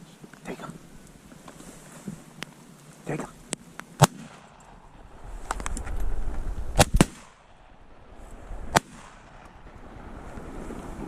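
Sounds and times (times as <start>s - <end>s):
shotgun blasts: 4.0s - 4.6s, 6.7s - 7.5s, 8.7s - 9.5s.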